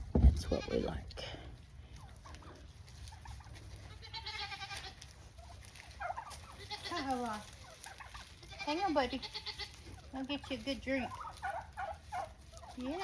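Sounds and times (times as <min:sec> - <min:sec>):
goats bleating: 0:00.3 - 0:01.4, 0:03.7 - 0:05.3, 0:06.4 - 0:07.6, 0:08.3 - 0:10.0.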